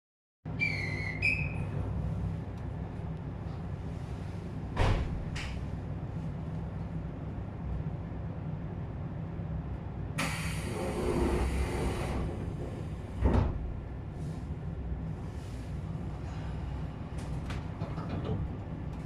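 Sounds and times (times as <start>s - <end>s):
electric train humming: 10.2s - 13.2s.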